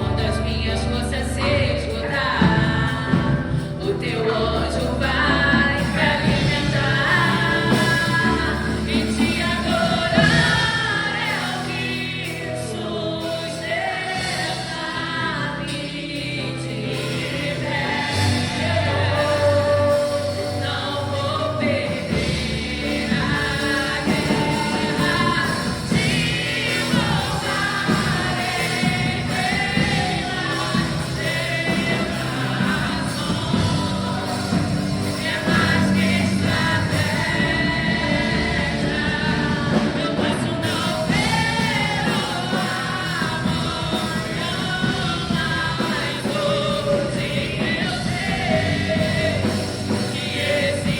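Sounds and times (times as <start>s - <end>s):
bass notes: 0.0s - 50.9s
choir singing: 0.0s - 50.9s
keyboard notes: 0.0s - 50.9s.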